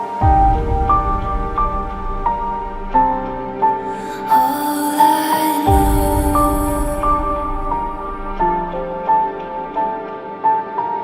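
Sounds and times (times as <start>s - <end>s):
soft synthesizer notes: 0.0s - 11.0s
deep low bass: 0.2s - 3.8s.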